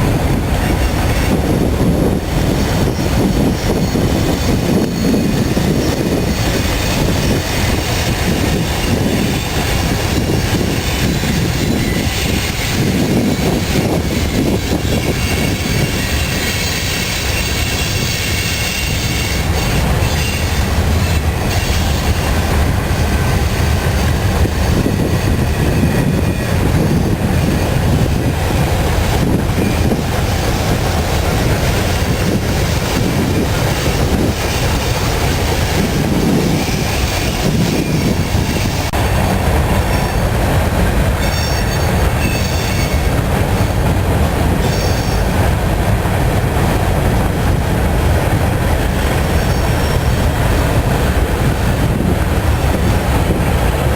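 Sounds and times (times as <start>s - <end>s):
train wheels clacking over rail joints: 0.0s - 53.9s
high-pitched wheel squeals: 41.2s - 43.2s.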